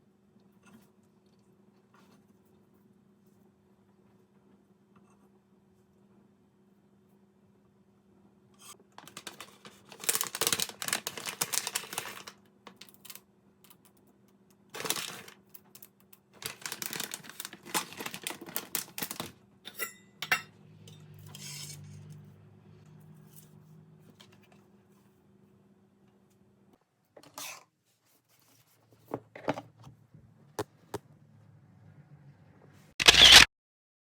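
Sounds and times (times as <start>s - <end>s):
clicking and rustling objects: 8.9s - 14.0s.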